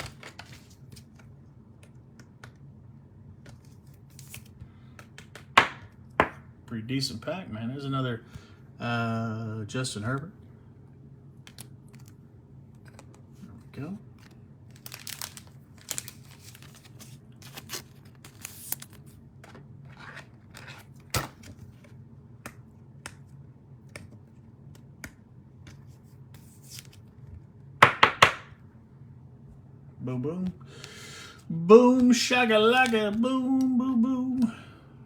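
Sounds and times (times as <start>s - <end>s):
cards being handled: 0.0s - 2.6s, 3.4s - 6.4s, 11.4s - 28.5s, 31.9s - 33.7s
plastic wrapper crinkling and tearing: 14.1s - 19.2s.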